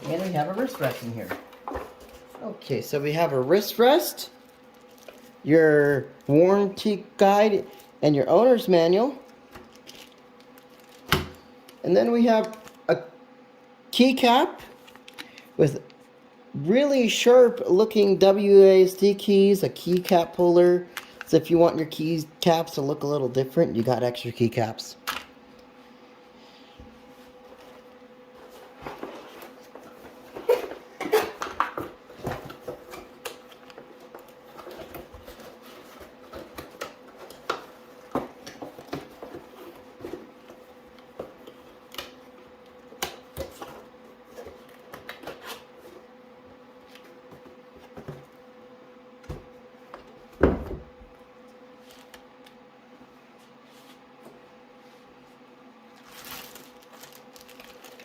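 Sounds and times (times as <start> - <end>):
faint steady hum: 0.0 - 58.0.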